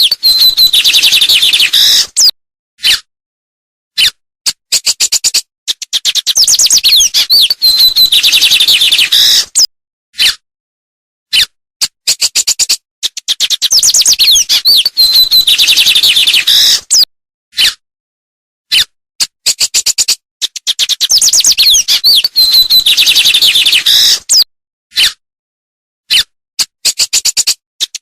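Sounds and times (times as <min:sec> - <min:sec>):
songbird singing chirps and whistles: 0:00.0 - 0:03.0, 0:04.7 - 0:10.3, 0:12.1 - 0:17.7, 0:19.5 - 0:24.5.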